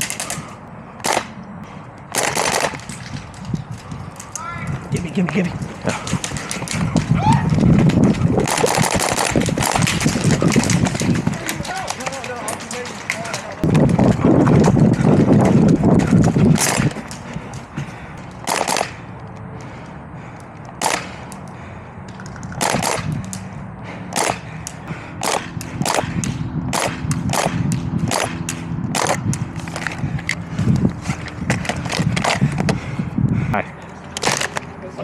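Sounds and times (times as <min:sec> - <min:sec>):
airsoft gun shots: 0:01.0 - 0:01.4, 0:02.1 - 0:03.0, 0:08.4 - 0:10.8, 0:18.4 - 0:19.0, 0:20.8 - 0:21.2, 0:22.6 - 0:23.1, 0:24.1 - 0:24.4, 0:25.2 - 0:29.2
loud muffled rumble: 0:03.1 - 0:18.2, 0:22.6 - 0:34.7.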